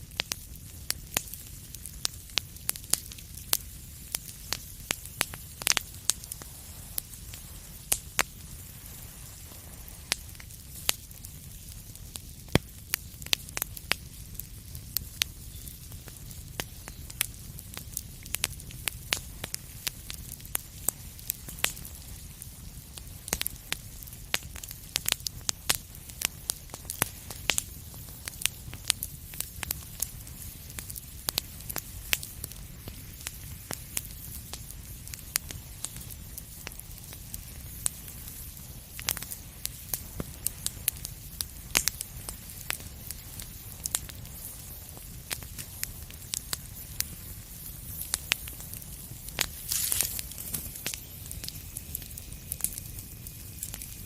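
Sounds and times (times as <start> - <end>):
wood fire crackling: 0.0 - 54.0.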